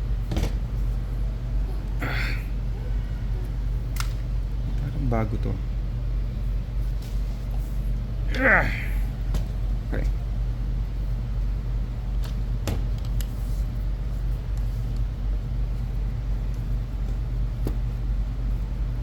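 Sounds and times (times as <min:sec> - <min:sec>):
low hum of room machinery: 0:00.0 - 0:19.0.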